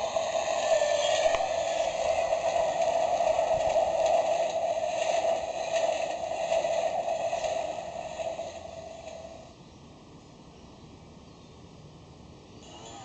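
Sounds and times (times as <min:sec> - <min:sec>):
toy train sound effect: 0:00.0 - 0:09.5, 0:12.6 - 0:13.0.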